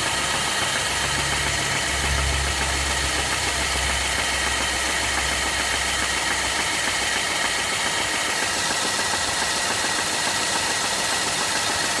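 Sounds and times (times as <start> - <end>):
car engine idling: 0.0 - 12.0
engine knock: 0.0 - 12.0
low drone: 0.9 - 6.0.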